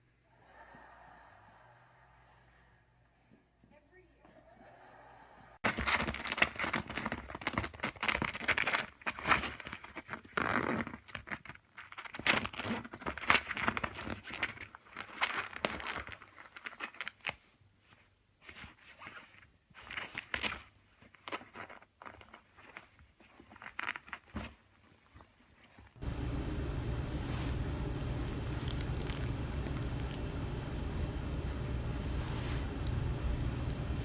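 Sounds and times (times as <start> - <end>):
small hard objects clattering: 26.0 - 34.0.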